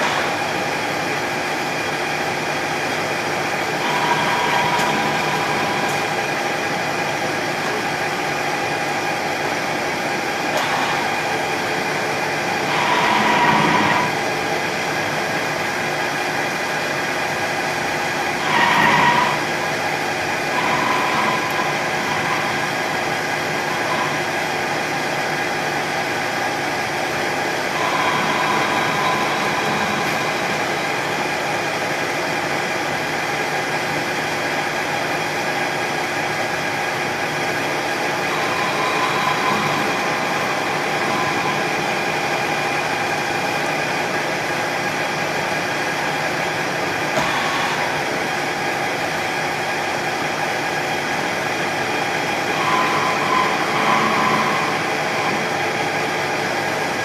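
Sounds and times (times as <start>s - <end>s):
lathe whine: 0.0s - 57.0s
lathe tool cutting with ringing: 3.6s - 6.7s, 12.4s - 14.5s, 18.0s - 25.5s, 27.6s - 32.1s, 37.5s - 43.8s, 51.3s - 57.0s.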